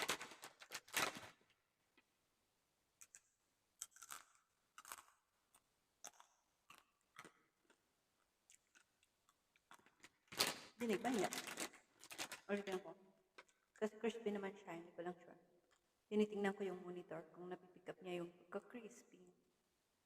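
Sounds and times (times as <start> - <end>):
crunchy food being chewed: 3.0 - 12.6.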